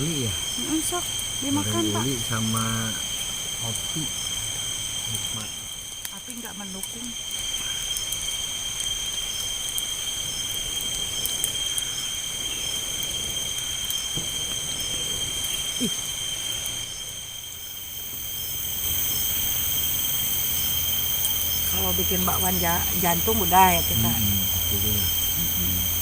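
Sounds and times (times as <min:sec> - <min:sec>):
faint insect chirp: 0:00.0 - 0:26.0
night insects chorusing: 0:00.0 - 0:26.0
low rumble: 0:21.2 - 0:26.0.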